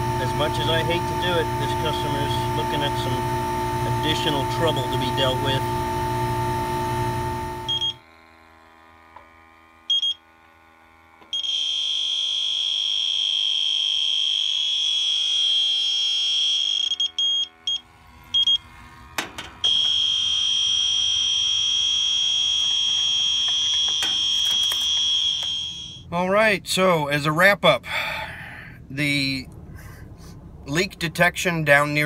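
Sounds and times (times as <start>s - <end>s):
leak detector beeping alarm: 0.0s - 8.0s, 9.9s - 10.3s, 11.2s - 18.8s, 19.5s - 26.1s.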